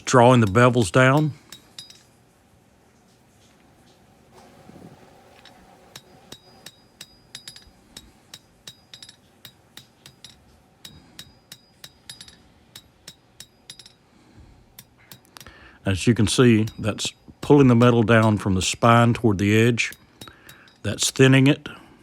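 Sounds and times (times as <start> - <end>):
hammer ringing on hot steel: 0.0 - 2.1, 5.4 - 14.1, 14.7 - 21.5.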